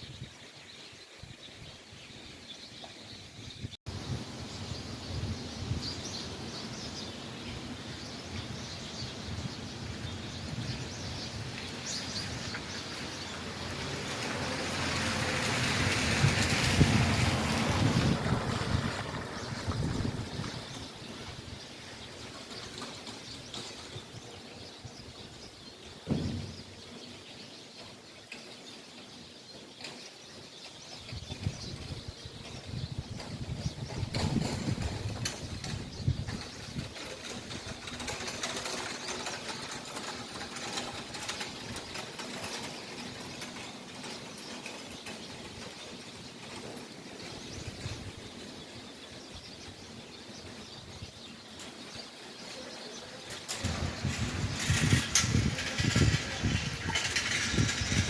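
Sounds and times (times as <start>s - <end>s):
wild birds chirping: 0.0s - 58.0s
low thump: 26.1s - 26.7s.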